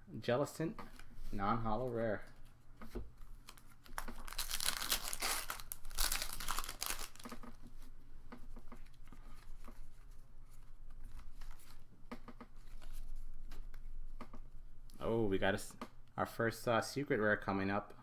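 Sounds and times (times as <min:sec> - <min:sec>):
cards rustling and clicking: 0:02.8 - 0:07.7
foil wrapper tearing and crinkling: 0:03.4 - 0:07.6.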